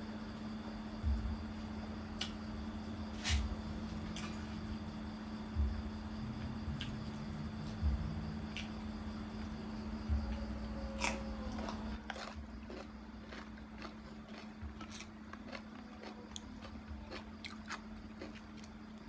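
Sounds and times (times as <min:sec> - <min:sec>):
steady low hum: 0:00.0 - 0:19.0
person chewing and biting: 0:11.0 - 0:19.0
small crunches: 0:11.0 - 0:19.0.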